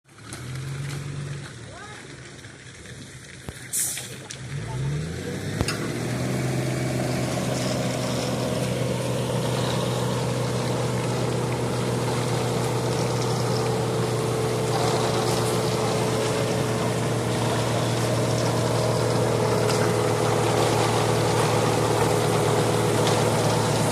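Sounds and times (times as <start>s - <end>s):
engine revving and humming: 0.1s - 1.7s, 4.1s - 23.9s
short hiss: 3.5s - 4.3s.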